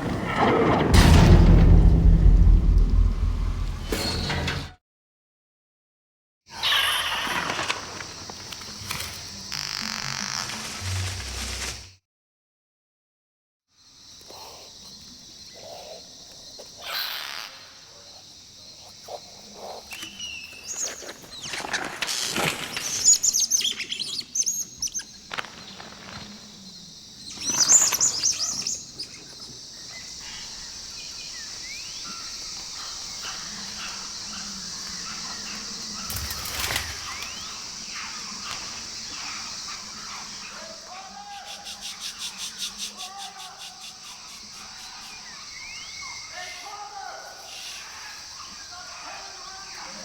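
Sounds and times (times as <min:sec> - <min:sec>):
birds chirping: 0:22.8 - 0:50.0
wings flapping: 0:35.4 - 0:39.4.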